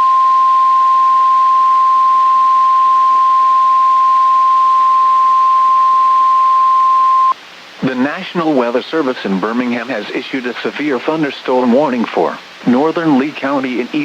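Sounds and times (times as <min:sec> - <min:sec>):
steady emergency alert tone: 0:00.0 - 0:07.4.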